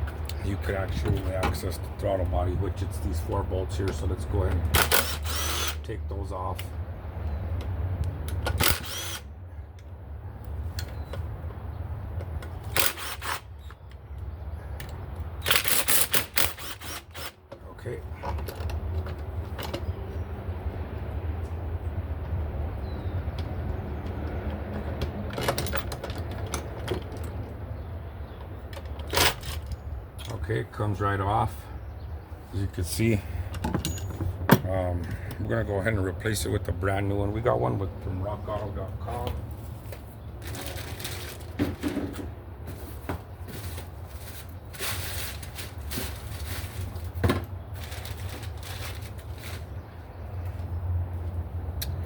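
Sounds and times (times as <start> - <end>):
metal clicks and rattles of tools: 14.8 - 17.4, 23.3 - 27.6
packaging rustling: 40.4 - 42.2, 43.5 - 49.8.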